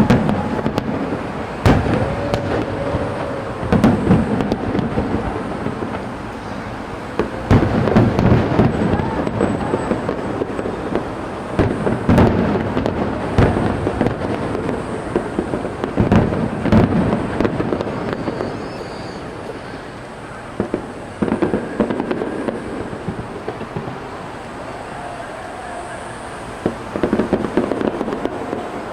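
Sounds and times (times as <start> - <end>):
fireworks bursting: 0.0 - 28.9.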